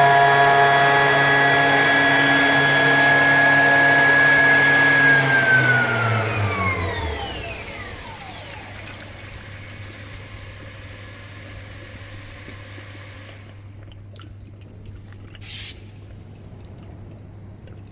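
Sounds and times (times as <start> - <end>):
spindle motor whine spinning down: 0.0 - 13.6.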